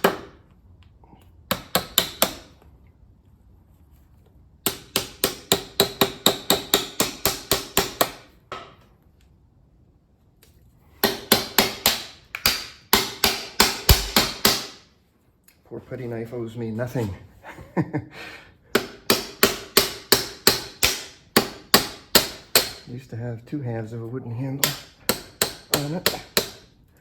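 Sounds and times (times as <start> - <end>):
hammer striking metal putty knife: 4.6 - 8.6, 11.0 - 14.8, 18.7 - 22.9, 24.6 - 26.7.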